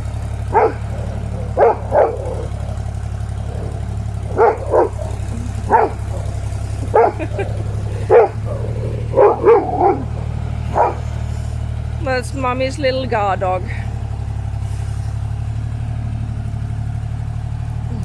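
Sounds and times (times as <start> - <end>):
excavator engine drone: 0.0 - 18.0
dog barking: 0.4 - 11.6.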